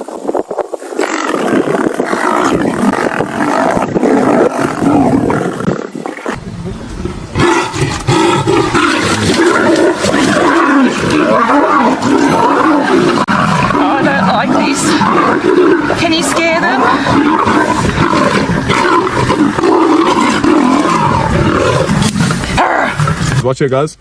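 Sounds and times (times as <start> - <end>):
wild animals roaring and growling: 1.0 - 23.4.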